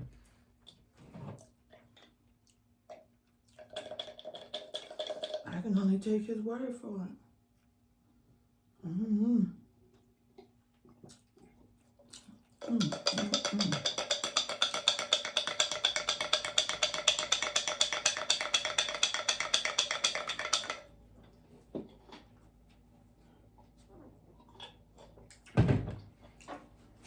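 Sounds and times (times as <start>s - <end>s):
fast percussive music: 12.8s - 20.8s.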